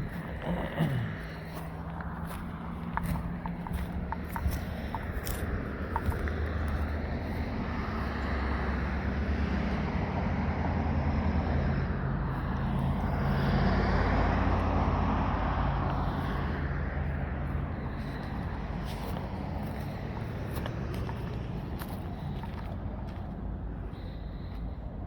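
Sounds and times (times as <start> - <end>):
road traffic noise: 0.0 - 25.0
vehicle passing: 0.0 - 25.0.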